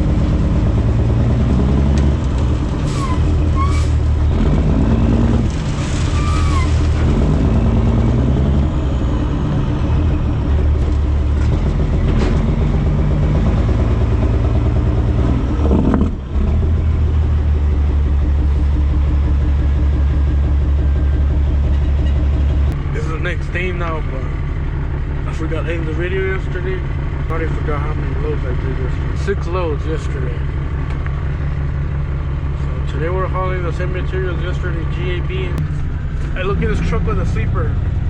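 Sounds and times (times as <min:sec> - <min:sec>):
diesel truck engine running: 0:00.0 - 0:38.0.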